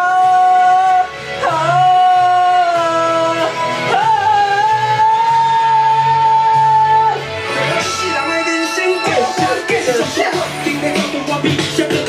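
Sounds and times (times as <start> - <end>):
pop song singing: 0.0 - 12.0
instrumental backing: 7.4 - 12.0.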